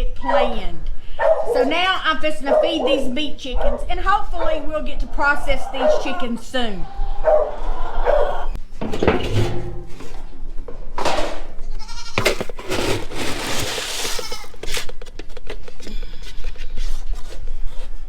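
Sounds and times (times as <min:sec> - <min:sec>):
goats bleating: 0:05.2 - 0:06.9, 0:11.6 - 0:12.4, 0:14.1 - 0:14.6
rustling scraping noise: 0:08.6 - 0:18.0.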